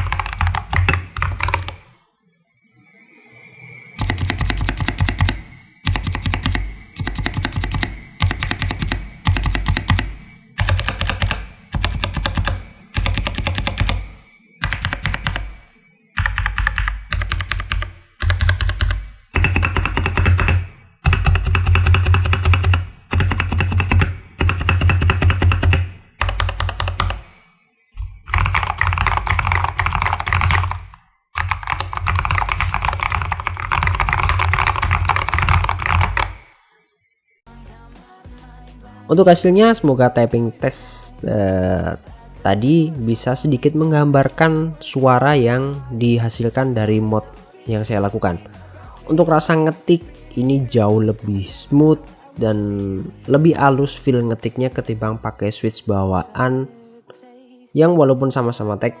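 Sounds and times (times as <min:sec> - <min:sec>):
rapid keystrokes on mechanical keyboard: 0:00.0 - 0:01.8, 0:04.0 - 0:15.6, 0:16.2 - 0:27.3, 0:28.1 - 0:36.4.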